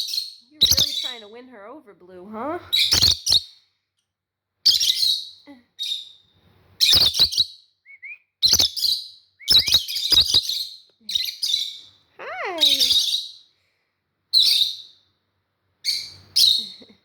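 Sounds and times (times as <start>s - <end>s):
parrots chirping: 0.0s - 1.4s, 2.7s - 3.8s, 4.6s - 13.6s, 14.3s - 15.1s, 15.8s - 17.0s.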